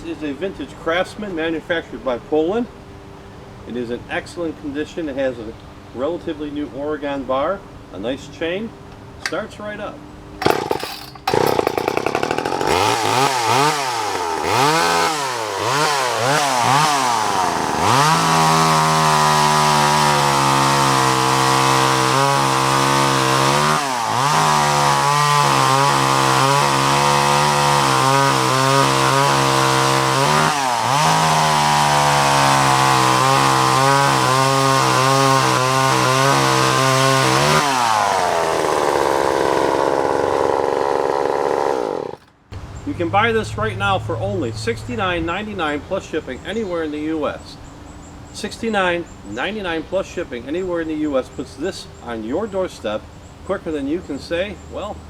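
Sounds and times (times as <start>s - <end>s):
chainsaw revving: 10.4s - 45.4s.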